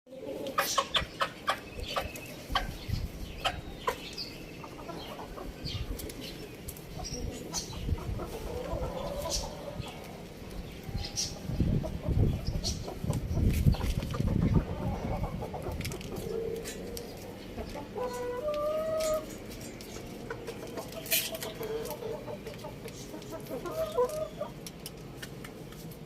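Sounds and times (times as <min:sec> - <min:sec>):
chickens clucking: 0:00.1 - 0:25.6
chicken drawn-out call: 0:17.9 - 0:19.3.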